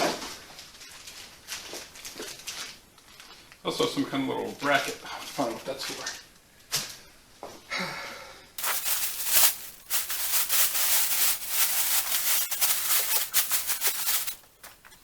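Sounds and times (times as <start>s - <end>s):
packing material rustling: 8.6s - 15.0s.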